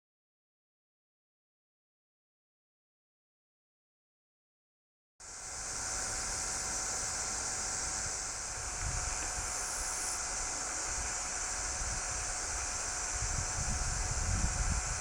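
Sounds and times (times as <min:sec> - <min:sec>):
steady high hiss: 0:05.2 - 0:15.0
wind buffeting microphone: 0:07.9 - 0:09.6, 0:10.9 - 0:15.0.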